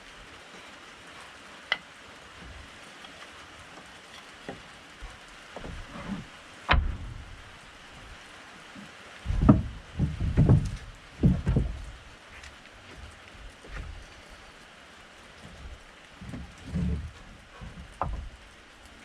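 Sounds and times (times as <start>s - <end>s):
light rain patter: 0.0s - 19.0s
wooden boards knocking and thumping: 5.6s - 7.5s, 9.2s - 12.0s, 16.2s - 18.4s.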